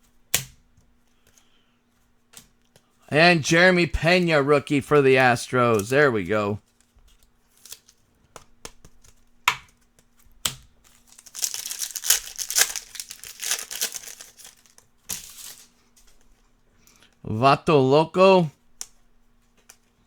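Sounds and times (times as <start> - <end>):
card packaging crinkling: 10.9 - 15.7.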